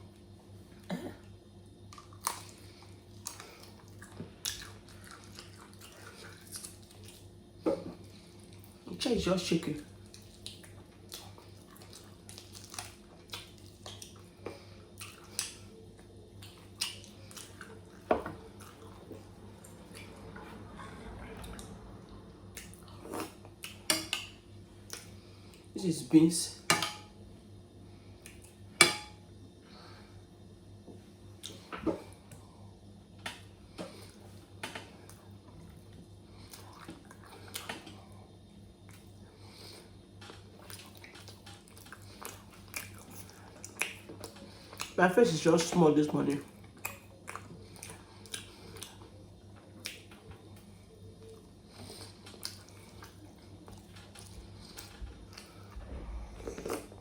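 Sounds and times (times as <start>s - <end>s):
steady low hum: 0.0s - 57.0s
chewing with wet mouth clicks: 1.9s - 7.3s, 10.0s - 20.4s, 21.4s - 25.7s, 31.4s - 31.7s, 36.4s - 38.1s, 38.8s - 45.0s, 46.3s - 55.8s.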